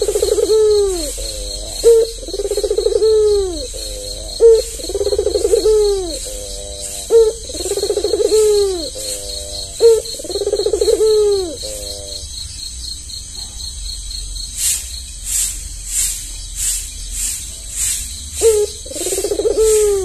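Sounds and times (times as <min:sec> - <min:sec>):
dove cooing: 0:00.0 - 0:12.3, 0:18.4 - 0:20.0.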